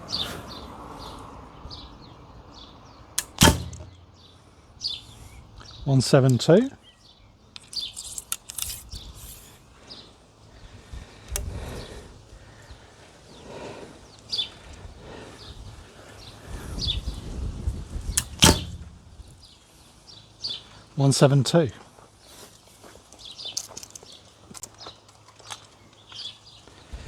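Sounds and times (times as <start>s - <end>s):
bow string snap: 3.2s - 4.2s, 18.2s - 19.2s.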